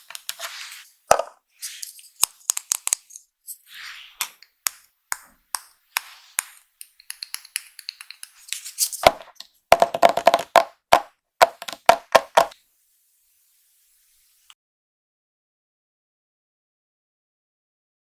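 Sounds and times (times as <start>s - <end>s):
makeup items clicking and tapping: 2.2s - 3.1s, 4.2s - 12.6s.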